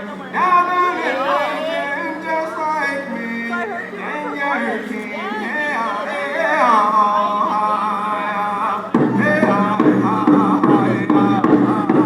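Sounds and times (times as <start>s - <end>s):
group singing high vocables: 0.0s - 12.0s
loud steady drum beat: 8.9s - 12.0s.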